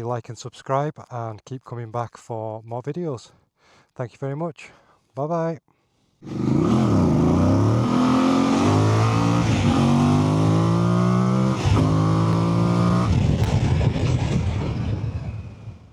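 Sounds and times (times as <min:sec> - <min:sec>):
motorcycle engine accelerating: 0:06.2 - 0:15.9.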